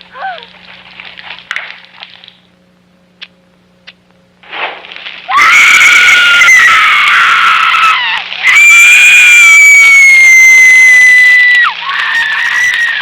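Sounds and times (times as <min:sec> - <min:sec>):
faint steady hum: 0:00.0 - 0:13.0
harsh scream-like shriek: 0:05.3 - 0:13.0.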